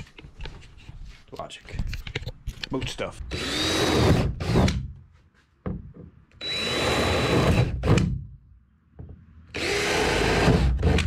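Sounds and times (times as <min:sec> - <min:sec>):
power drill whining: 0:03.3 - 0:04.6, 0:06.4 - 0:07.8, 0:09.5 - 0:11.0.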